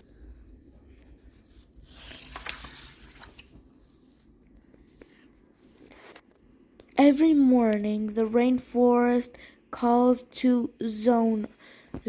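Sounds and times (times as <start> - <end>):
book pages turning: 0.7 - 6.4.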